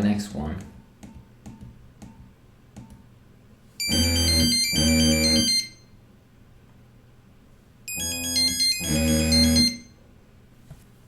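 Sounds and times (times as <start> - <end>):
synthesized ringtone melody: 3.8 - 5.9, 7.9 - 9.9.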